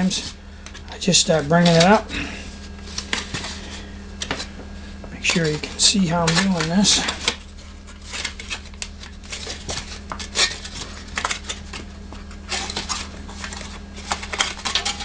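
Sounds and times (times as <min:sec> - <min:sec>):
aluminum foil crinkling: 0:05.3 - 0:15.0.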